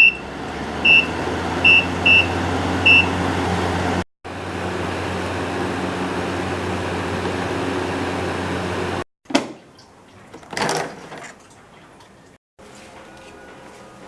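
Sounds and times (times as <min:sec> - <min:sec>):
air cooler fan running: 0:00.0 - 0:09.0
low motor hum: 0:00.0 - 0:09.0.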